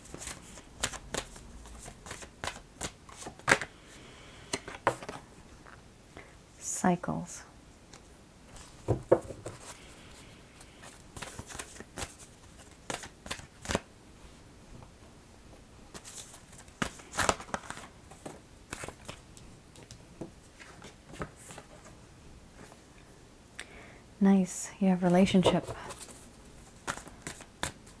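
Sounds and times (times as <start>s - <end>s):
cards being shuffled: 0.1s - 3.7s, 10.8s - 13.8s, 15.9s - 19.2s, 25.3s - 28.0s.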